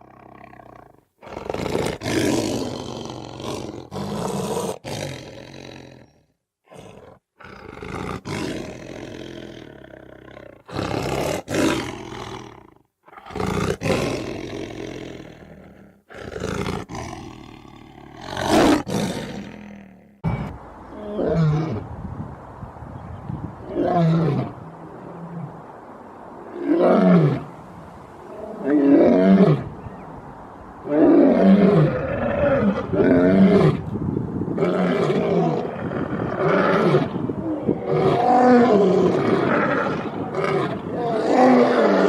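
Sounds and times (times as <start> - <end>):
lion roaring: 0.0 - 21.8, 34.6 - 42.0.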